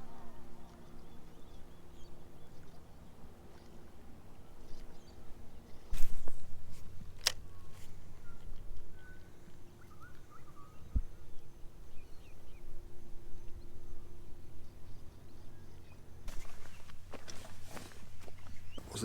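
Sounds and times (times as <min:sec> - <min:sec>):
low rumble of wind: 0:00.0 - 0:19.0
faint bird chirps: 0:07.4 - 0:19.0.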